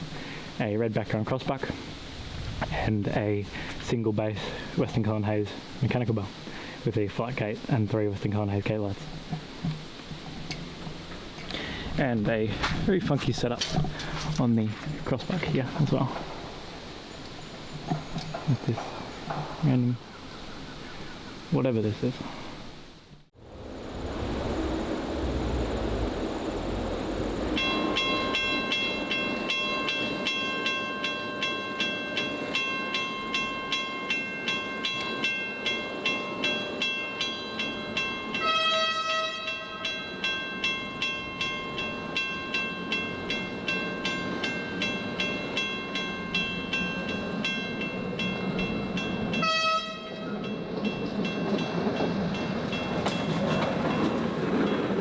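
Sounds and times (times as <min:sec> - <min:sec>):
train rumble: 0:23.4 - 0:55.0
steam locomotive whistle: 0:25.2 - 0:29.6, 0:38.3 - 0:39.9, 0:49.4 - 0:50.4.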